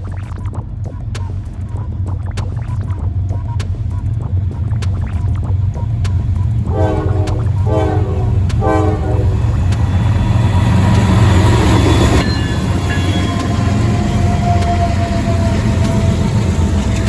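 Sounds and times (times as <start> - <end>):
low engine rumble: 0.0 - 17.0
train passing: 3.1 - 17.0
locomotive air horn blasts: 6.6 - 16.4.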